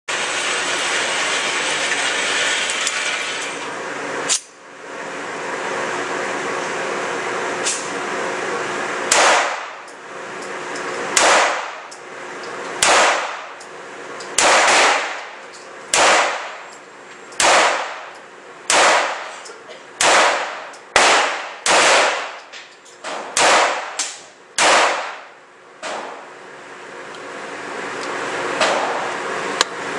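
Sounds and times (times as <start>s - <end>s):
gunshot: 9.1s - 9.8s, 11.2s - 11.8s, 12.8s - 13.5s, 14.4s - 15.2s, 15.9s - 16.6s, 17.4s - 18.0s, 18.7s - 19.2s, 20.0s - 22.4s, 23.4s - 25.2s.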